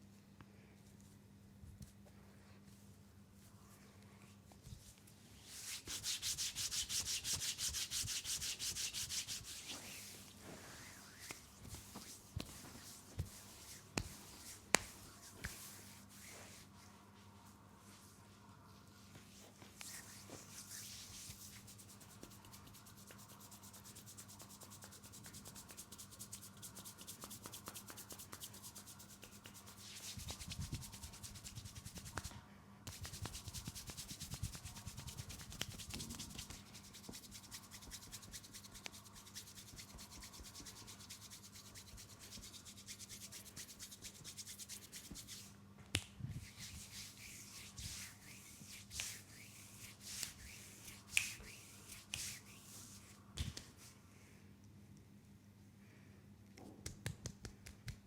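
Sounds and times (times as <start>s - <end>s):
hands rubbing oiled skin: 5.4s - 16.9s, 19.3s - 45.5s, 46.4s - 53.9s.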